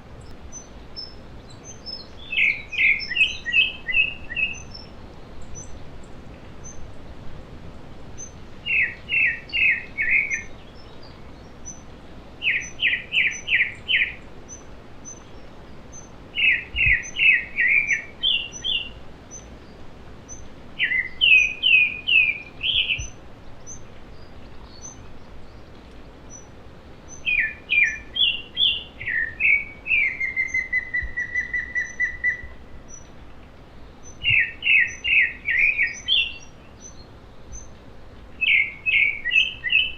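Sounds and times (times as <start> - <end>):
bird trill: 27.1 - 33.1, 34.0 - 37.7, 38.4 - 39.9
faint high bird peeps: 27.1 - 33.1.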